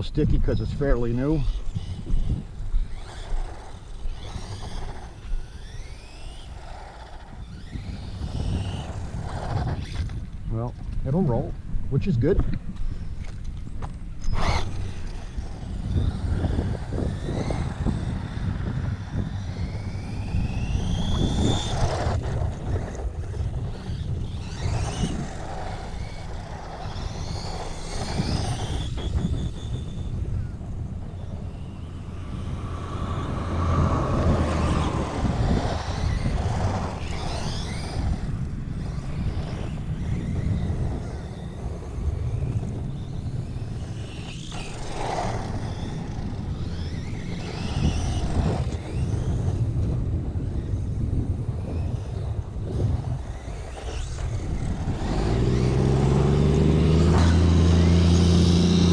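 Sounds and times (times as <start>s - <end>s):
rc truck motor whining: 0.0s - 58.9s.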